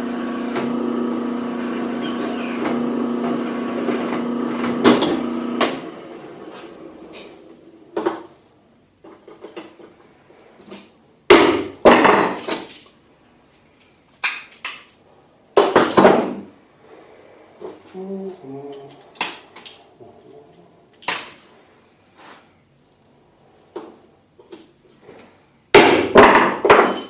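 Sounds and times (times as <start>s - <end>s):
drill press motor hum: 0.0s - 7.1s.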